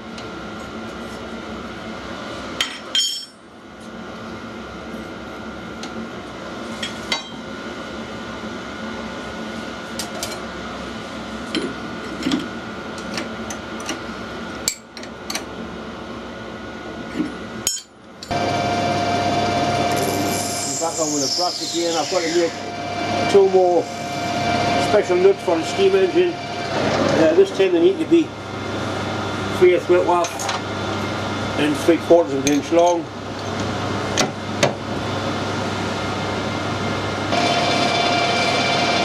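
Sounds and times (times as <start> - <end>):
metal tools clinking: 2.7 - 3.4
machine humming with whine: 16.0 - 32.2, 33.1 - 39.0
louder machine running: 18.2 - 32.3, 33.2 - 39.0.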